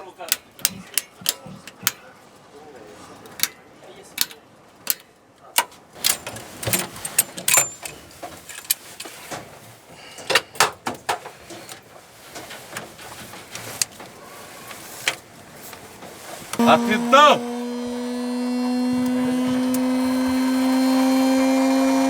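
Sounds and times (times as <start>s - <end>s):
handling clicks and rattles: 0.2s - 2.2s, 3.2s - 9.6s.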